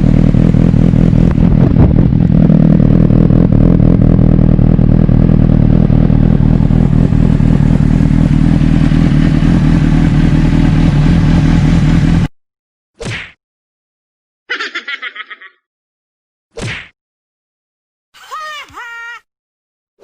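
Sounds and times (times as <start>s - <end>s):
motorcycle engine running: 0.0s - 12.3s.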